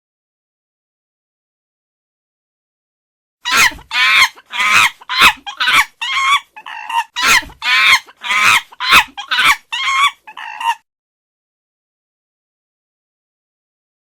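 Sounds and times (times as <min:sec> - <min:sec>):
chimpanzee calls: 0:03.5 - 0:10.9.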